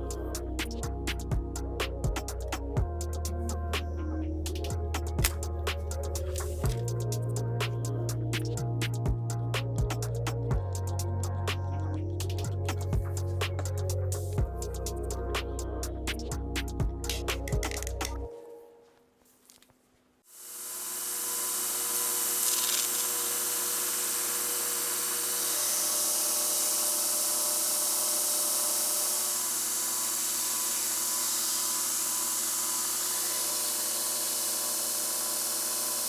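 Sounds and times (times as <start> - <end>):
small electric motor humming: 20.3 - 36.0.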